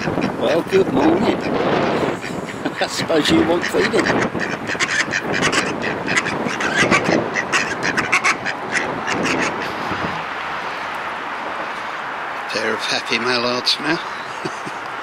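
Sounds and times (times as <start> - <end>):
ducks quacking: 0.0 - 11.0
wind hiss: 0.0 - 15.0.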